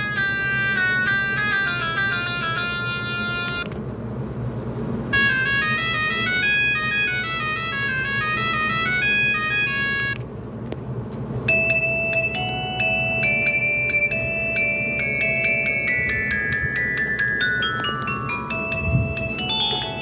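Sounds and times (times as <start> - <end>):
synthesized ringtone melody: 0.0 - 3.7, 5.1 - 10.2, 11.5 - 20.0
steady low hum: 0.0 - 20.0
bell-like ringtone notes: 11.5 - 20.0.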